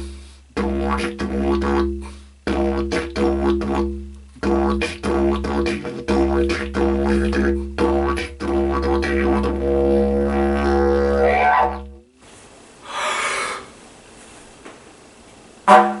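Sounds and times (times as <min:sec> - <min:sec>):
breathy hiss: 0:00.0 - 0:00.6, 0:01.9 - 0:02.5, 0:12.2 - 0:13.9
didgeridoo drone: 0:00.0 - 0:12.1.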